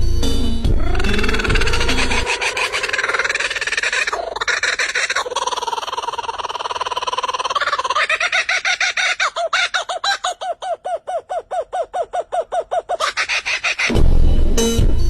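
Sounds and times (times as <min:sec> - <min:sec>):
loud music: 0:00.1 - 0:02.3, 0:13.9 - 0:15.0
bird clucking calls: 0:00.8 - 0:13.9.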